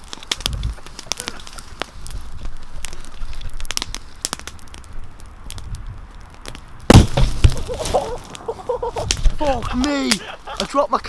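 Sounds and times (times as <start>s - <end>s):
bonfire crackling and popping: 0.0s - 11.0s
loud bang: 6.9s - 8.2s.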